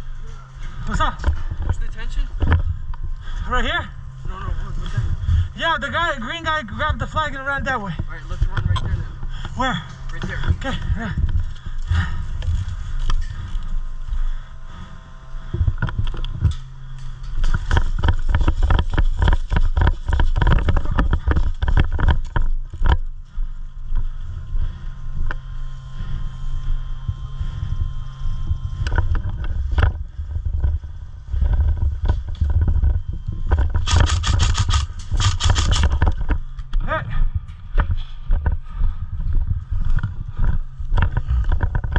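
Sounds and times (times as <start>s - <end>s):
wind rumble on microphone: 15.2s - 41.9s.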